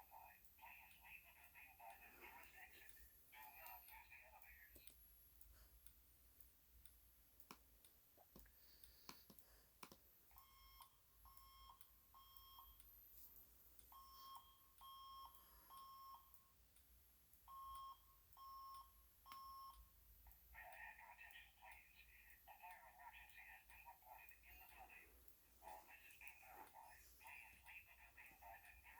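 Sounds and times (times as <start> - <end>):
faint fire alarm beeps: 10.3 - 16.7, 17.4 - 20.0.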